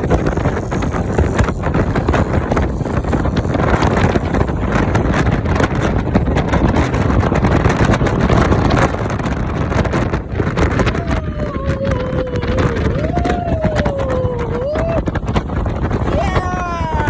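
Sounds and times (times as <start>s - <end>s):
thin wavering tone: 0.0s - 6.2s
wind buffeting microphone: 0.0s - 17.0s.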